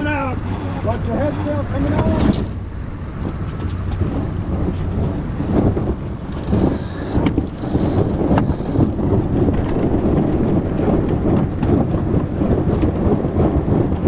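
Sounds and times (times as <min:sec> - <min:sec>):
strong wind buffeting microphone: 0:00.0 - 0:14.0
sharp mechanical clicks: 0:06.3 - 0:08.9.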